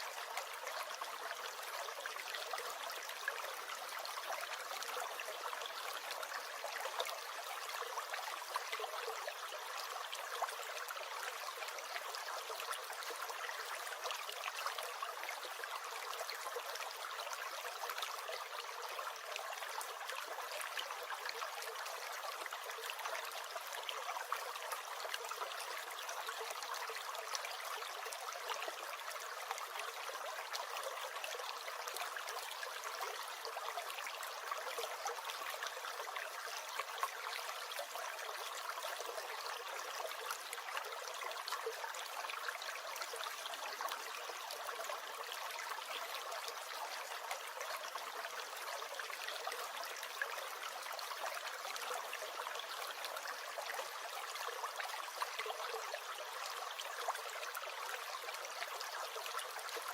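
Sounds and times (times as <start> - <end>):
stream gurgling: 0.0 - 59.9.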